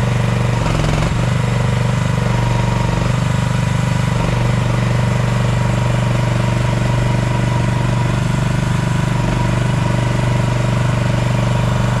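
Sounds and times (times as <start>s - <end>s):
small engine idling: 0.0s - 12.0s.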